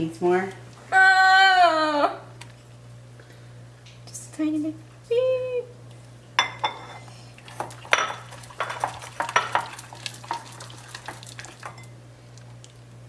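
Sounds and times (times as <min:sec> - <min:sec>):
utensil clinking against bowl: 0:06.4 - 0:11.9
utensil stirring slime: 0:07.0 - 0:12.7.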